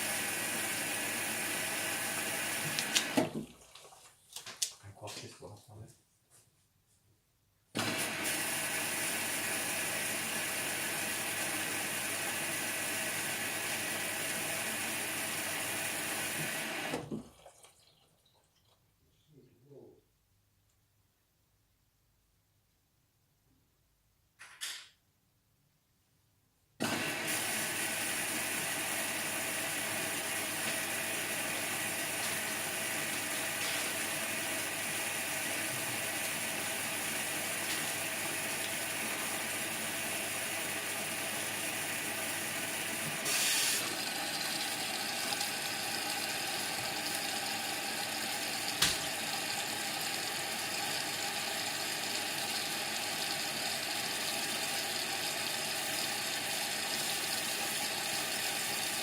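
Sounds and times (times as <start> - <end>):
washing machine running: 0.0 - 4.0, 7.8 - 18.0, 26.8 - 59.0
washing machine rush: 7.8 - 17.4, 26.8 - 59.0.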